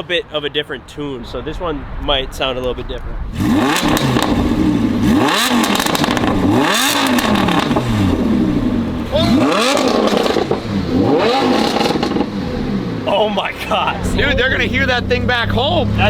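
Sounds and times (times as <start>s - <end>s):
car engine revving: 3.3s - 16.0s.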